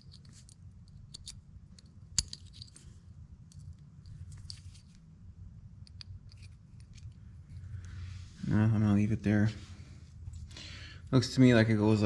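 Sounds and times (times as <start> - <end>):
low steady hum: 0.0 - 12.0
metal parts scraping: 2.2 - 2.9, 4.0 - 5.0.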